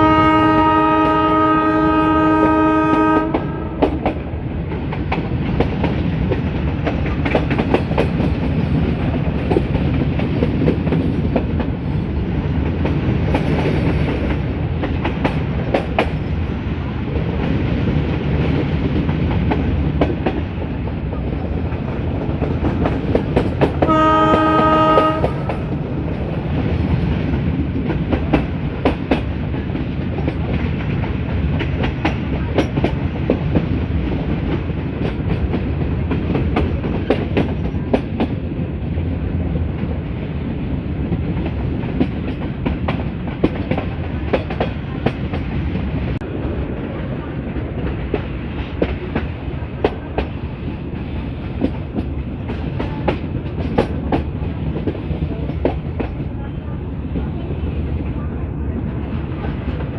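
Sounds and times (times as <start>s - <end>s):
locomotive horn: 0.0s - 4.0s, 23.8s - 25.8s
train rumbling: 0.0s - 59.9s
wheels clicking over rail joints: 3.3s - 11.8s.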